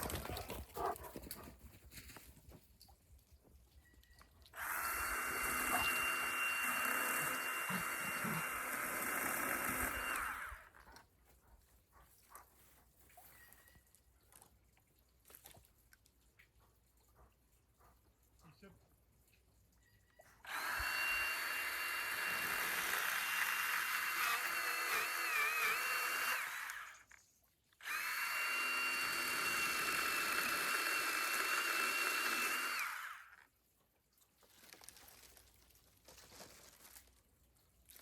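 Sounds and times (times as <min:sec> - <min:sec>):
small electric motor running: 0:04.6 - 0:10.8, 0:20.5 - 0:27.1, 0:27.8 - 0:33.4.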